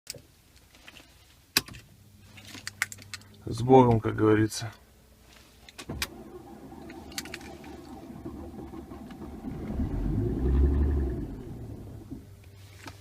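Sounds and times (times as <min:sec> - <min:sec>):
diesel engine cranking: 0:05.7 - 0:12.5.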